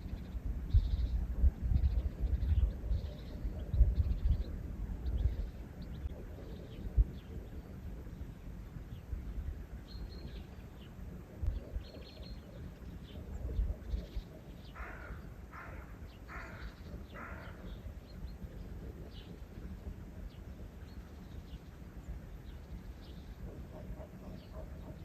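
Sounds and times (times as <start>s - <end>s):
low outdoor rumble: 0.0s - 25.0s
small birds chirping: 0.0s - 25.0s
harsh caws: 14.7s - 17.6s.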